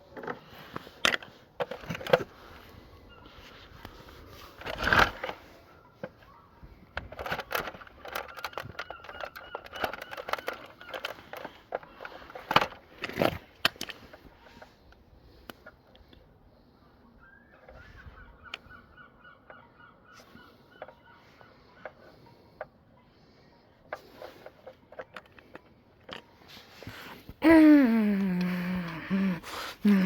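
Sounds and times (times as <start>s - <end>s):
plastic controller clicking and cracking: 0.1s - 2.7s, 3.8s - 16.3s, 23.9s - 26.4s.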